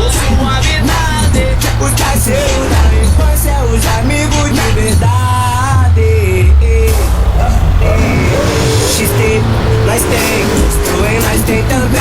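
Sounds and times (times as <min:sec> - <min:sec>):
funk track with heavy bass beat: 0:00.0 - 0:12.0
sharp high percussion hits: 0:00.0 - 0:12.0.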